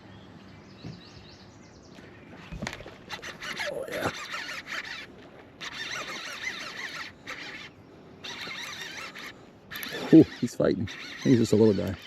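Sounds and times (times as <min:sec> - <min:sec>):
fishing reel buzzing: 0:03.1 - 0:12.0.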